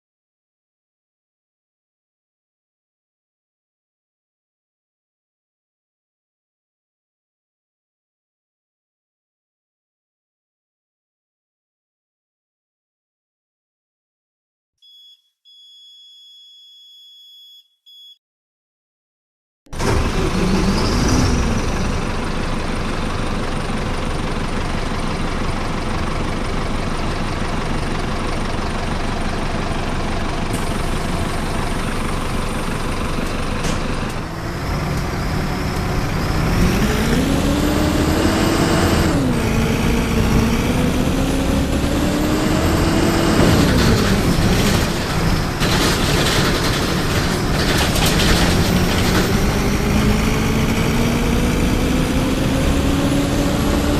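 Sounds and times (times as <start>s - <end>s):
bus diesel engine running: 19.7s - 53.9s.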